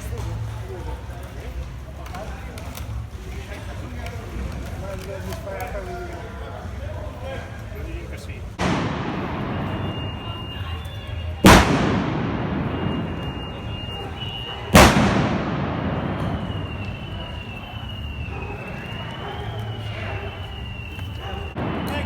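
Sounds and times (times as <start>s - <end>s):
gunshot bangs with ringing decay: 8.6s - 10.8s, 11.4s - 17.4s.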